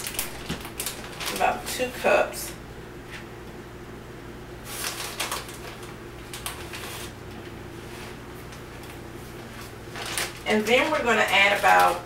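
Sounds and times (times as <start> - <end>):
faint steady hum: 0.0 - 12.0
shredded cheese rustling: 4.6 - 7.1, 9.6 - 12.0.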